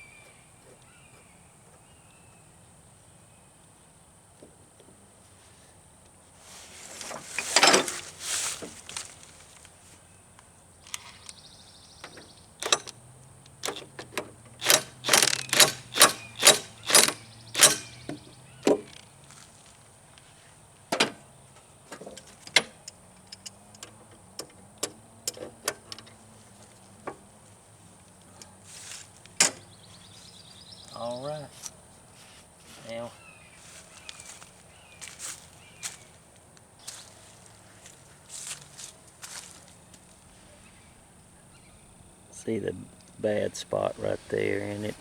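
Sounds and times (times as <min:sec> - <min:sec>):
scraping rustle: 0:06.4 - 0:10.1, 0:25.4 - 0:30.3, 0:31.1 - 0:40.7
metal tools clicking and knocking: 0:07.4 - 0:08.0, 0:12.0 - 0:19.0, 0:21.9 - 0:26.2, 0:29.4 - 0:29.6.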